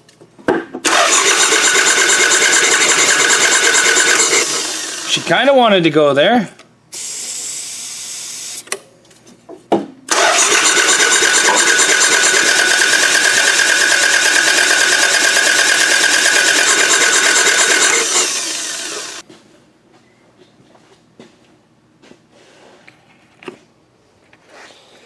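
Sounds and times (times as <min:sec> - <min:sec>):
engine cranking with starter whine: 0:00.8 - 0:05.3, 0:10.1 - 0:19.2
starter clicks: 0:10.1 - 0:19.2.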